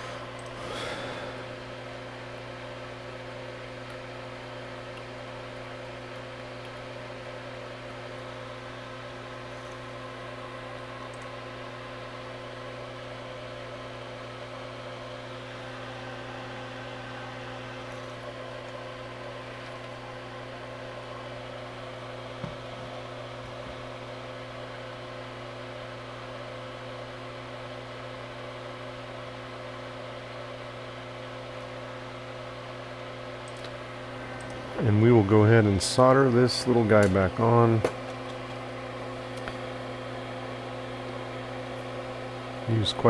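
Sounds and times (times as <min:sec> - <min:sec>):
machine hum with fixed tones: 0:00.0 - 0:43.0.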